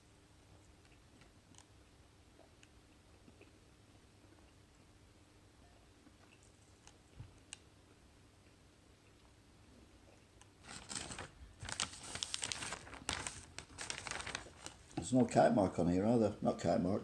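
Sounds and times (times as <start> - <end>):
food packaging crinkling: 10.6 - 15.2.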